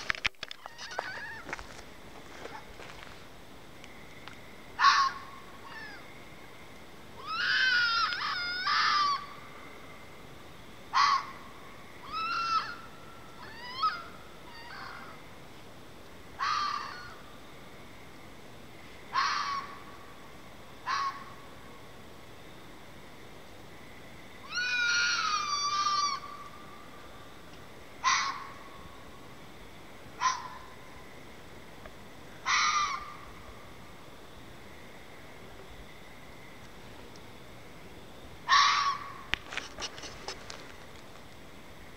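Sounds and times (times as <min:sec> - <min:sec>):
fox screaming and yelping: 0:04.8 - 0:06.0, 0:07.2 - 0:09.4, 0:10.9 - 0:11.4, 0:12.0 - 0:15.2, 0:16.4 - 0:17.2, 0:19.1 - 0:19.8, 0:20.8 - 0:21.3, 0:24.4 - 0:26.5, 0:28.0 - 0:28.6, 0:30.2 - 0:30.7, 0:32.4 - 0:33.3, 0:38.5 - 0:39.2.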